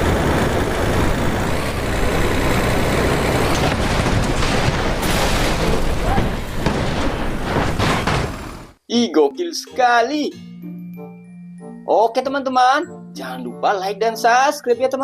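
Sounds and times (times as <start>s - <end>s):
truck engine running: 0.0s - 8.8s.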